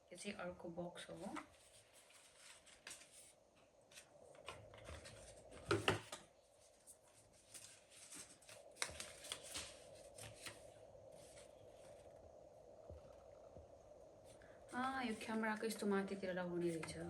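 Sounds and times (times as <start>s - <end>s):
faint steady hum: 0.0s - 17.0s
cardboard packaging rustling: 1.2s - 12.0s.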